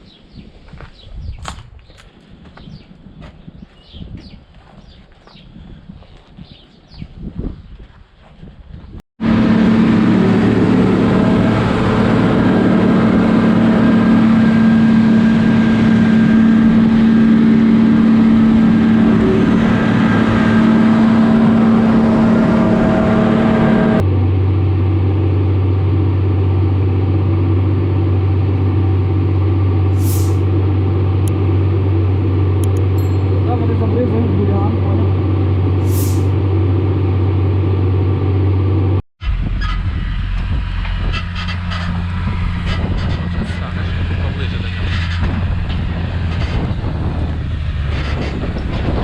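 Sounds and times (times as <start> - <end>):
tractor engine running: 9.2 - 49.0.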